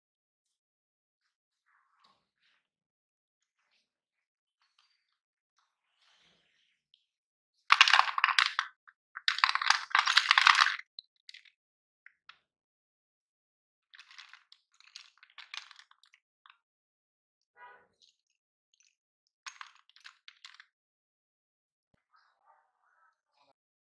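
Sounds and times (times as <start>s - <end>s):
chalk sticks clattering: 7.7s - 10.8s.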